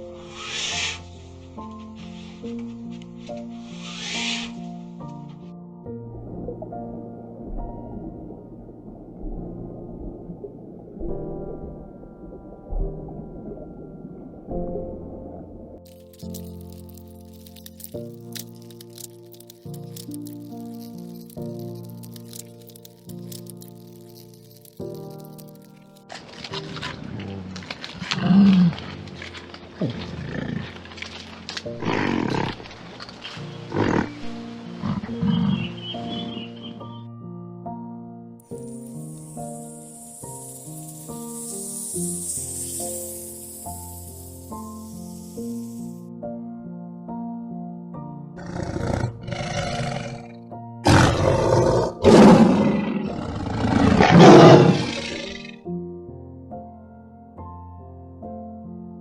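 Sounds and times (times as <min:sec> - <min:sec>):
background music: 0:00.0 - 0:59.0
lion roaring: 0:26.7 - 0:31.1, 0:31.8 - 0:32.7, 0:33.7 - 0:35.7, 0:48.4 - 0:55.6
large animal calling: 0:33.6 - 0:36.8.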